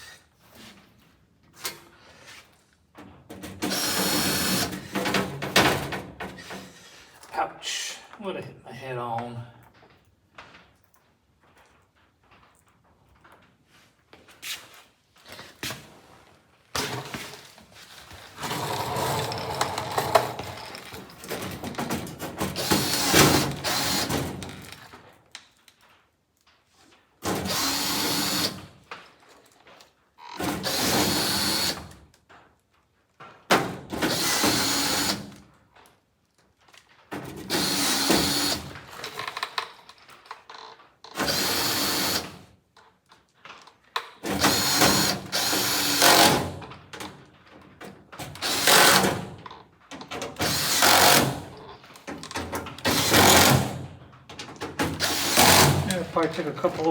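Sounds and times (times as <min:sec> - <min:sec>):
clattering and knocking: 0:02.9 - 0:06.8
power drill driving screws: 0:03.6 - 0:05.1, 0:18.4 - 0:21.1, 0:22.4 - 0:24.8, 0:27.4 - 0:28.7, 0:30.3 - 0:32.0, 0:34.1 - 0:35.4, 0:37.4 - 0:39.7, 0:41.1 - 0:42.4, 0:44.2 - 0:46.6, 0:48.2 - 0:49.4, 0:50.4 - 0:53.9, 0:54.8 - 0:56.8.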